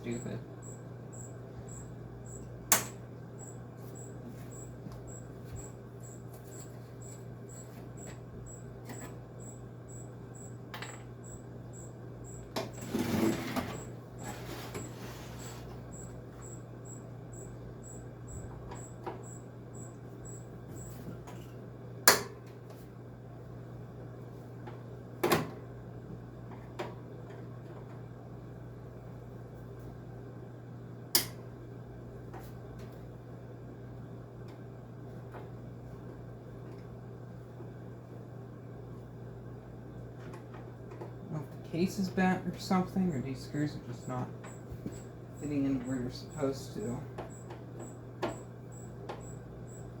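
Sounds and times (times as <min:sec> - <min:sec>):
steady low hum: 0:00.0 - 0:50.0
scraping and rustling: 0:12.8 - 0:15.8.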